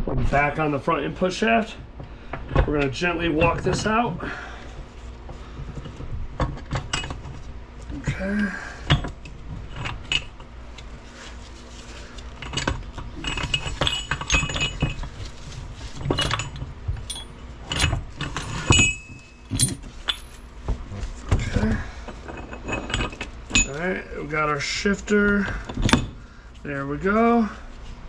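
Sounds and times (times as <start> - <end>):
metal gears clinking: 13.2 - 15.1, 16.1 - 20.5.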